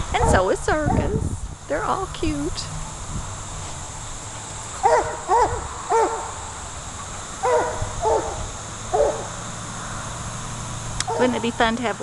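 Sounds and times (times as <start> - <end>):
puppy barking: 4.8 - 6.3, 7.4 - 9.3.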